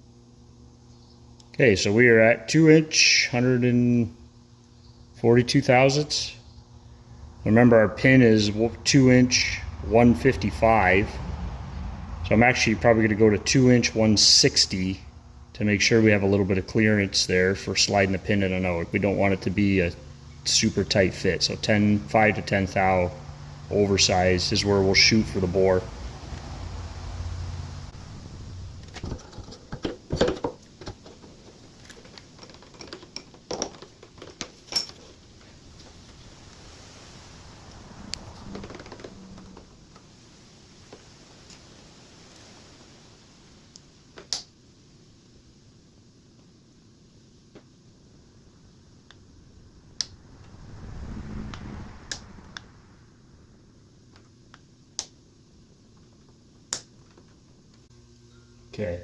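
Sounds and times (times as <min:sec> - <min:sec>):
low rumble: 0:08.6 - 0:14.2, 0:36.4 - 0:40.0, 0:49.3 - 0:54.1
tools clicking and tapping: 0:31.9 - 0:35.0
metal hand tools clinking: 0:34.6 - 0:35.0.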